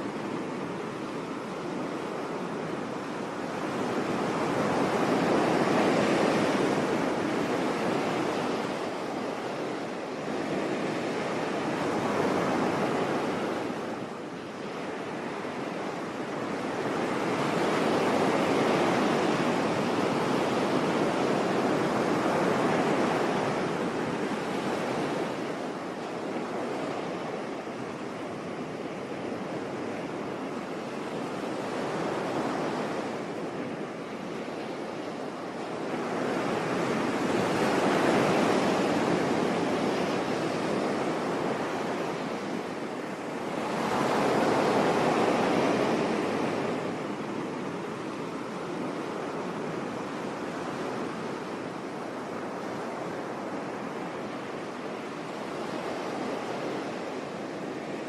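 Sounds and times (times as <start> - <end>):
sea waves breaking on beach: 0.0 - 58.0.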